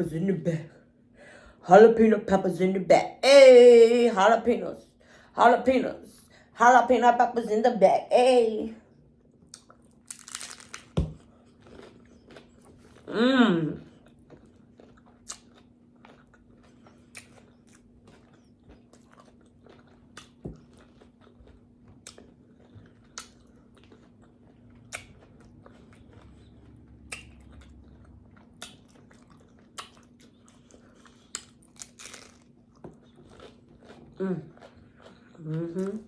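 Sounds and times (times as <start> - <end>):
person chewing crunchy food: 9.2 - 36.0.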